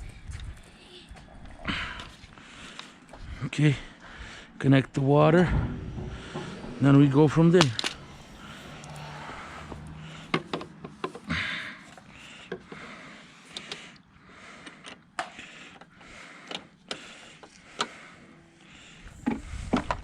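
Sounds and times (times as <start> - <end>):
hose fittings clicking and knocking: 9.7 - 11.3.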